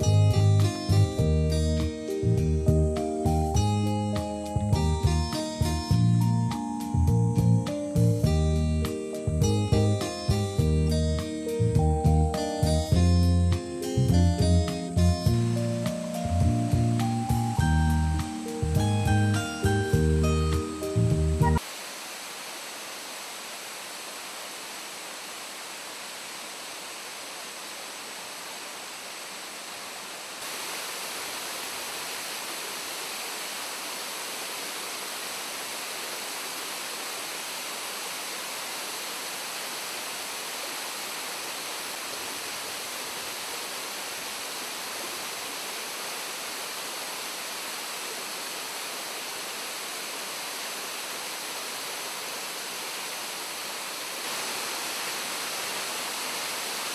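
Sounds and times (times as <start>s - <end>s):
waterfall rushing: 13.6s - 56.9s.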